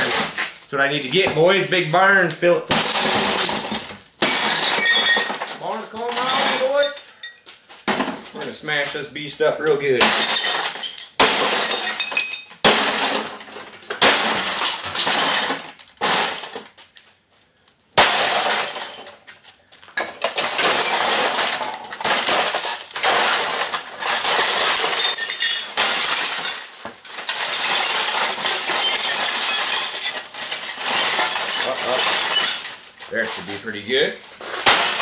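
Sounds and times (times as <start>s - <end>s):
glass shattering and tinkling: 2.7s - 7.6s, 10.0s - 16.7s, 18.0s - 19.2s, 20.0s - 33.1s, 34.6s - 35.0s.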